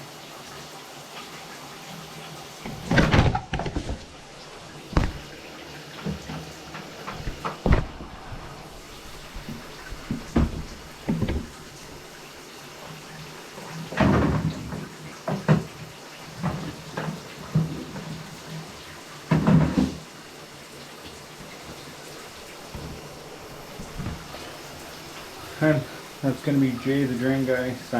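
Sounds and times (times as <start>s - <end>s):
objects knocking and clunking: 2.6s - 12.2s, 13.9s - 18.3s, 19.3s - 20.0s, 23.7s - 24.6s.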